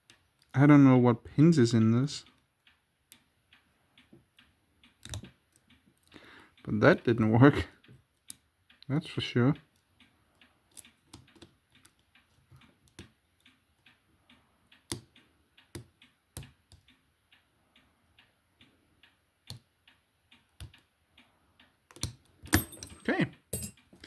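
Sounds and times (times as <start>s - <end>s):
lock pick clicking in padlock: 5.0s - 5.2s, 21.9s - 23.0s.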